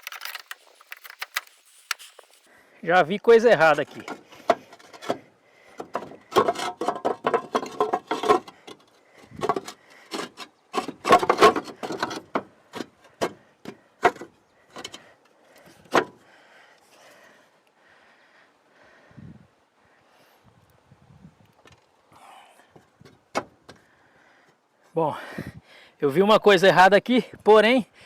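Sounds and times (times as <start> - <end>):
roof tile knocking and scraping: 3.9 - 15.0.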